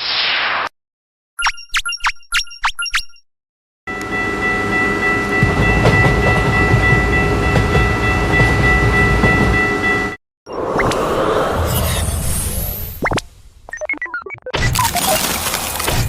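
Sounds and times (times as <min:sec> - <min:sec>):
train rumbling: 0:03.9 - 0:12.6.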